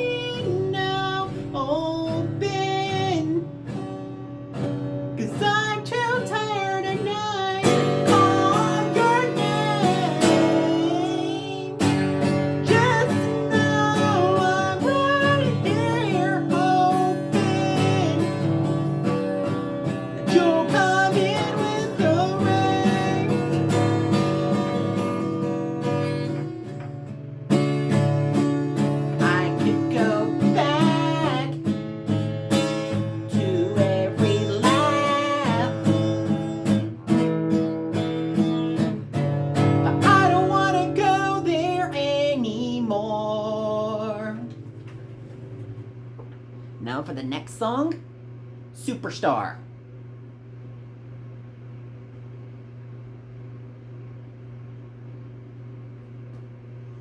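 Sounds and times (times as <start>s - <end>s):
woman singing: 0.0s - 3.5s, 5.2s - 11.8s, 12.6s - 18.4s, 20.2s - 23.6s, 29.2s - 31.7s, 33.0s - 36.6s, 39.8s - 44.6s
acoustic guitar strumming: 0.0s - 47.7s.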